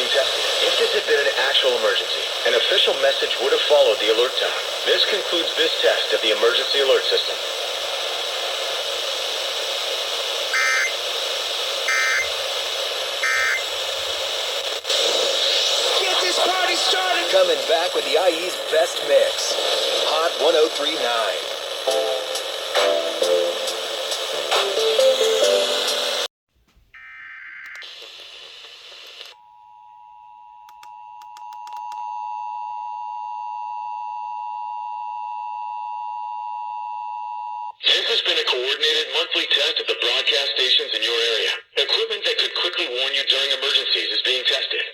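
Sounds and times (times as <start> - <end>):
radio hiss: 0.0 - 24.9, 27.8 - 29.4, 37.8 - 44.9
buzzy digital tone bursts: 10.5 - 11.0, 11.9 - 12.4, 13.2 - 14.1
harsh buzzing noise: 10.5 - 24.9.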